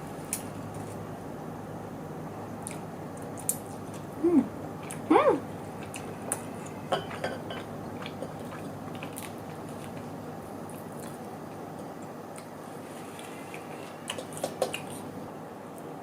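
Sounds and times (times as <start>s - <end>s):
steady background hum: 0.0s - 16.0s
quiet chewing: 2.6s - 4.2s, 4.8s - 6.8s, 7.6s - 15.1s.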